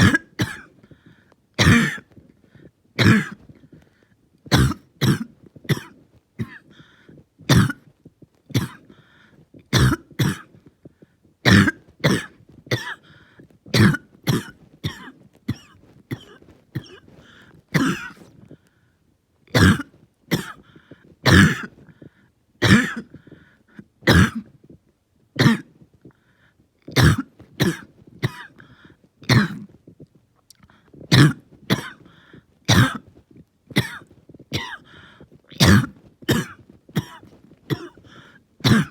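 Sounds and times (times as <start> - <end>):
person coughing harshly: 0.0 - 0.7, 1.6 - 2.2, 3.0 - 3.6, 4.5 - 6.8, 7.5 - 7.9, 8.5 - 8.9, 9.7 - 10.6, 11.4 - 18.4, 19.5 - 20.6, 21.2 - 21.9, 22.6 - 23.2, 24.0 - 24.5, 25.4 - 25.7, 27.0 - 28.6, 29.3 - 29.8, 31.1 - 38.9.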